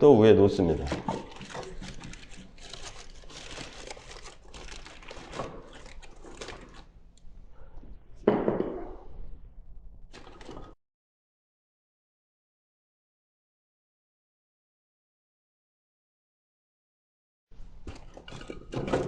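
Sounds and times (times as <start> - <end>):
newspaper crinkling: 0.6 - 7.0, 10.1 - 10.7.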